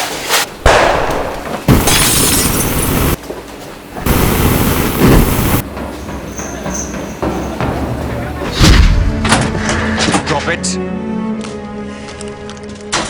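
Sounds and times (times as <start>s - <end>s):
glass smashing: 1.7s - 3.2s.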